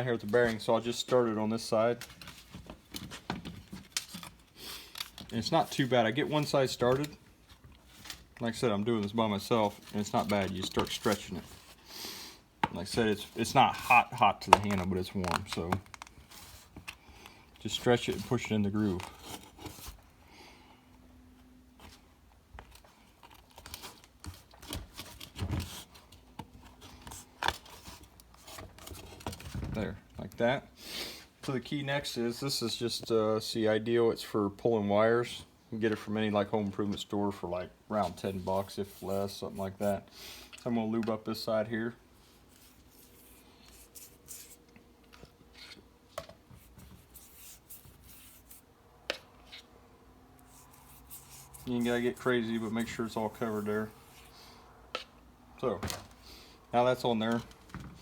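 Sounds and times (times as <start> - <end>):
hand rubbing lubricant on metal: 50.4 - 54.3.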